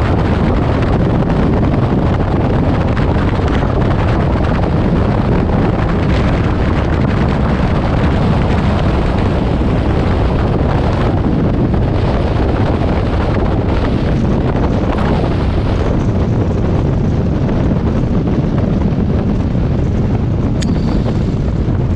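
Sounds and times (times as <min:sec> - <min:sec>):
light aircraft engine and propeller: 0:00.0 - 0:21.9
wind noise on microphone: 0:00.0 - 0:21.9.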